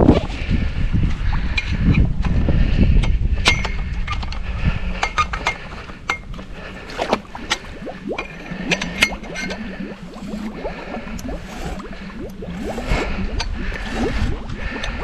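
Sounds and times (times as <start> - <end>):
low rumble: 6.4 - 15.0
water splashing and dripping: 6.7 - 15.0.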